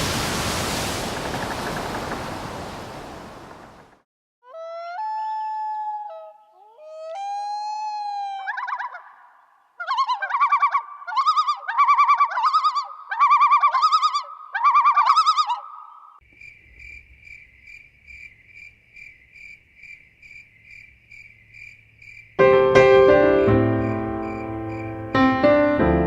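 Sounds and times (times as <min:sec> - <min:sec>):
bird calling rapid notes: 0:08.1 - 0:16.2
insect high chirping: 0:16.2 - 0:22.4, 0:23.7 - 0:25.1
piano music: 0:22.4 - 0:26.0.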